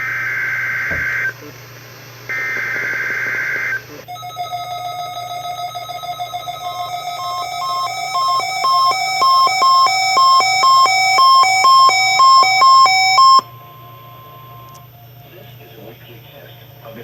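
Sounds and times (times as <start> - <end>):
steady alert tone: 4.1 - 14.2
weather radio alert beeps: 4.1 - 14.8.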